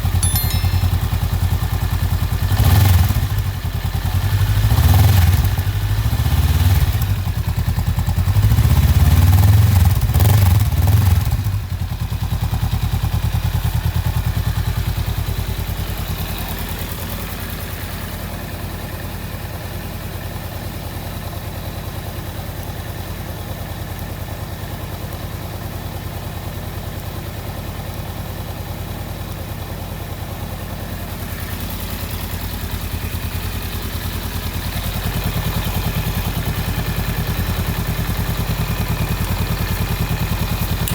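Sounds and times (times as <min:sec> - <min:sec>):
motorcycle engine revving and idling: 0:01.8 - 0:40.9.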